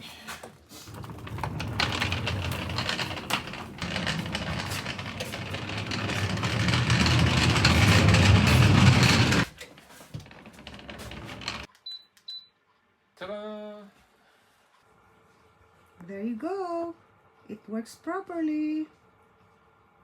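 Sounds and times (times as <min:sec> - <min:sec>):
dolly wheels rattling on floor: 0:00.9 - 0:11.7.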